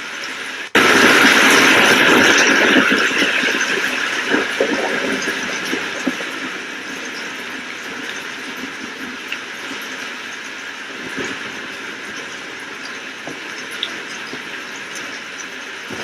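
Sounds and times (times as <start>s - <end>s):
steady rain: 0.0s - 16.0s.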